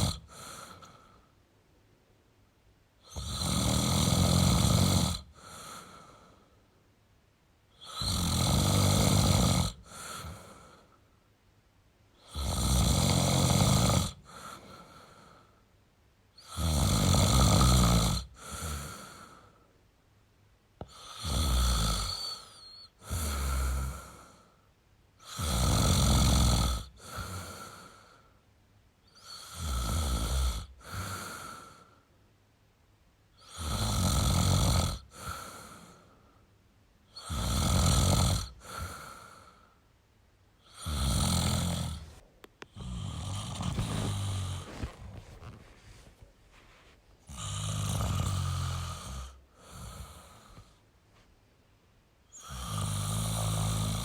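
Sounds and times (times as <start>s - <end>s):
man snoring: 0.0s - 1.1s, 3.0s - 6.3s, 7.8s - 10.8s, 12.2s - 15.4s, 16.4s - 19.5s, 20.8s - 24.4s, 25.2s - 28.0s, 29.2s - 32.0s, 33.4s - 36.0s, 37.1s - 39.6s, 40.6s - 45.6s, 47.3s - 50.8s, 52.3s - 54.0s.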